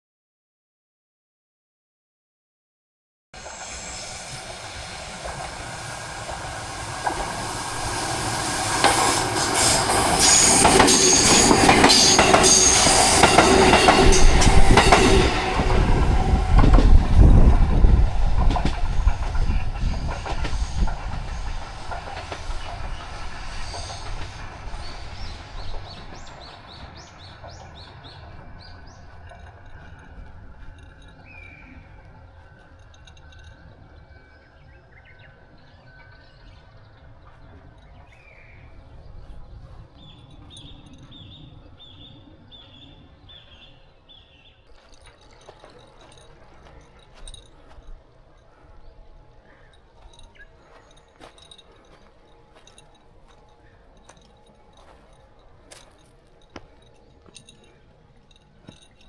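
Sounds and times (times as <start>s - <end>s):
high wheel squeal: 3.4s - 33.6s
electric train passing: 3.4s - 59.0s
wheels clicking over rail joints: 4.3s - 59.0s.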